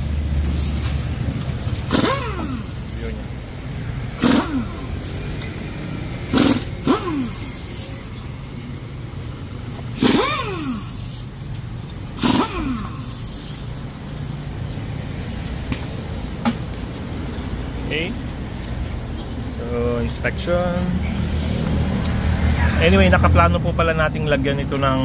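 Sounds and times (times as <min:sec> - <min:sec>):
pneumatic impact wrench bursts: 0:00.0 - 0:03.3, 0:04.0 - 0:08.2, 0:09.8 - 0:14.0.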